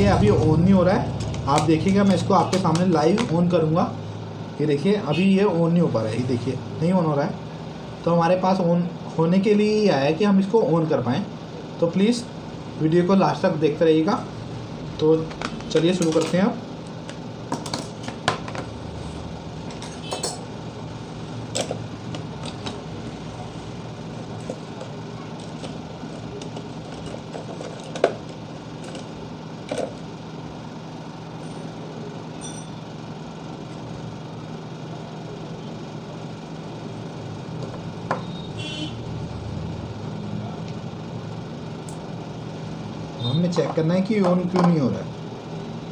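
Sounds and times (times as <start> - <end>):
low machine hum: 0.0 - 45.9
clicks and taps of tools: 15.3 - 16.4.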